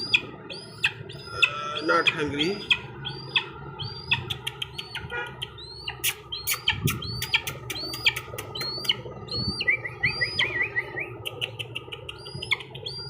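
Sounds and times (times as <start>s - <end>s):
bird chirping: 0.0s - 13.0s
sharp clicks: 4.1s - 9.0s, 11.2s - 13.0s.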